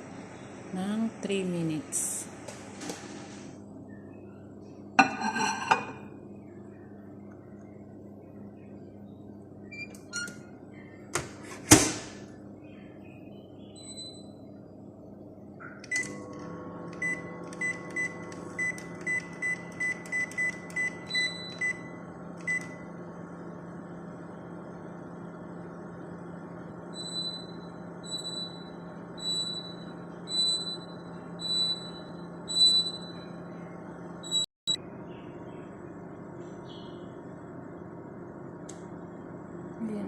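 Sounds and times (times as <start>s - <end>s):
microwave oven humming: 0.0s - 40.0s
microwave keypad beeps: 9.7s - 10.4s, 13.8s - 14.4s, 15.8s - 16.1s, 16.9s - 22.9s, 26.9s - 33.4s, 34.2s - 34.5s
click: 38.7s - 38.9s.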